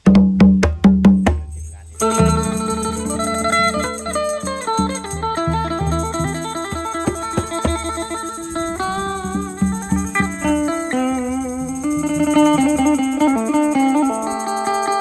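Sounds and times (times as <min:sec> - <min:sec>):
fast plucked-string melody: 0:01.0 - 0:15.0
pulsing bass: 0:01.7 - 0:13.3.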